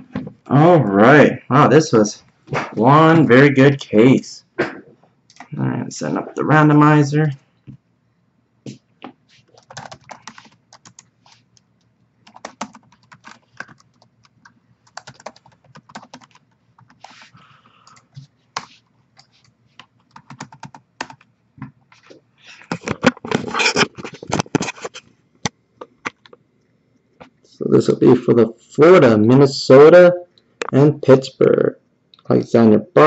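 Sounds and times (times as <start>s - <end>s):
computer keyboard typing: 9.5s - 17.2s, 17.8s - 21.3s.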